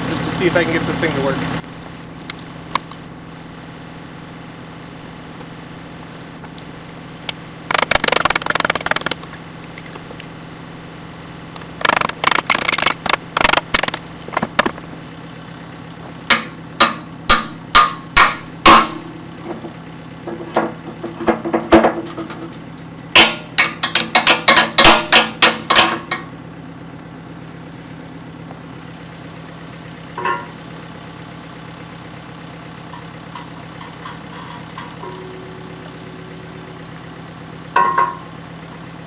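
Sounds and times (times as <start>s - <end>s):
diesel engine idling: 0.0s - 39.0s
hammer blows on metal pin: 16.3s - 19.7s, 33.0s - 36.9s
metal clanking and scraping: 16.4s - 26.3s, 30.2s - 30.9s, 32.9s - 37.0s, 37.8s - 38.4s.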